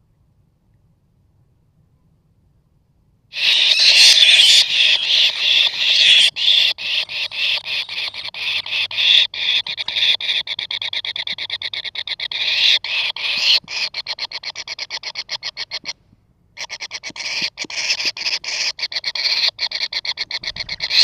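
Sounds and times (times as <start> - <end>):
nestlings rasping begging calls: 3.3 - 15.9, 16.6 - 21.0.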